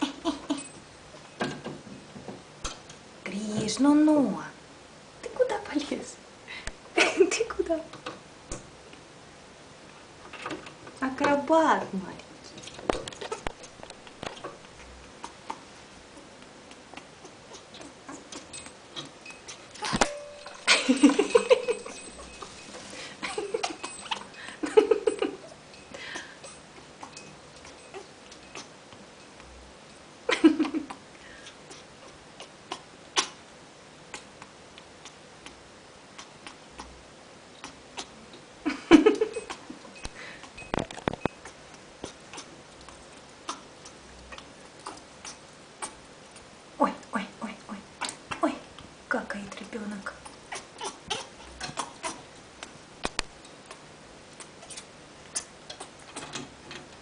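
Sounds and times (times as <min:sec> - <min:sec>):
parrot making baby-like sounds: 0:50.1 - 0:52.3.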